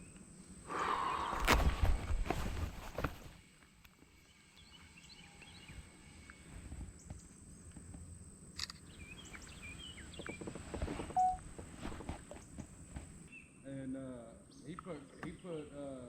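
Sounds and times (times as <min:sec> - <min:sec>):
faint bird chirps: 0:00.0 - 0:01.8, 0:08.6 - 0:11.4.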